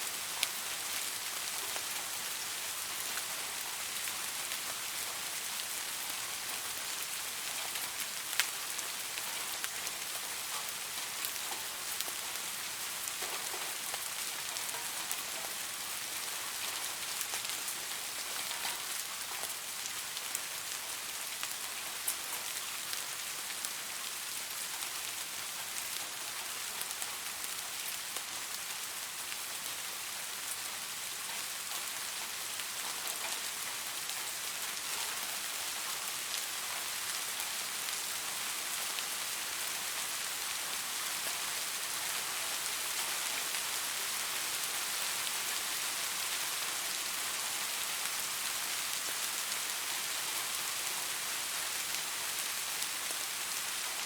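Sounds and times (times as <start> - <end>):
rain falling on leaves: 0.0 - 54.0.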